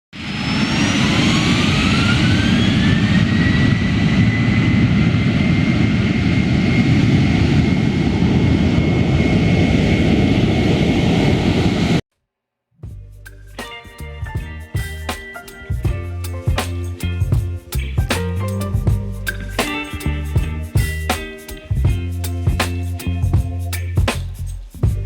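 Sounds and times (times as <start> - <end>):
jet engine rumbling and whining: 0.2 - 12.0.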